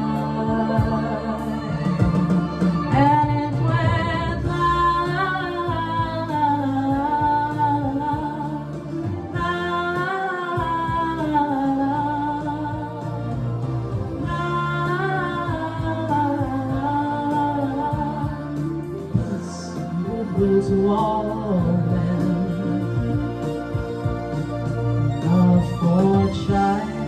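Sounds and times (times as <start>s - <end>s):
instrumental backing: 0.0s - 27.0s.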